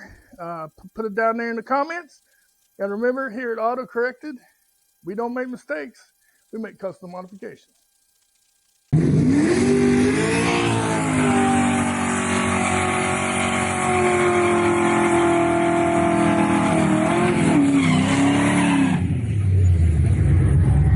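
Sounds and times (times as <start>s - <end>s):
car engine revving high: 8.9s - 20.9s
car tires squealing: 9.3s - 19.1s.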